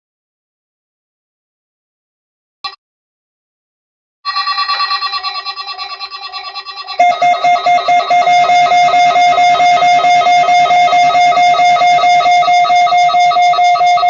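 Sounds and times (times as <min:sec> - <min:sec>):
pulsing electronic alarm beeps: 0:04.3 - 0:14.0.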